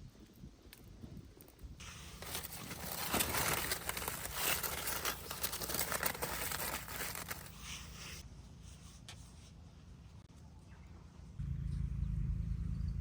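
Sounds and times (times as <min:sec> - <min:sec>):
crinkly rustling with clicks: 0:02.2 - 0:07.6.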